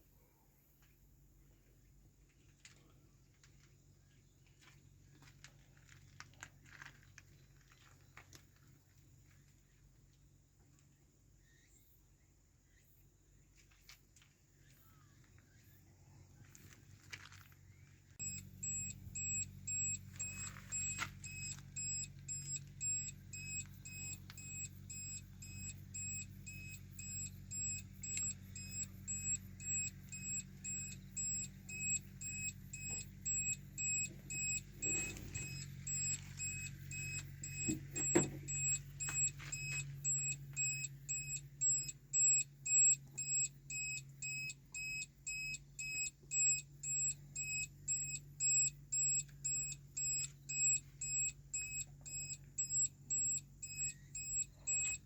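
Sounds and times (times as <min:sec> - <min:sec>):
small engine humming: 0:14.5 - 0:55.0
electronic warning beeper: 0:18.2 - 0:55.0.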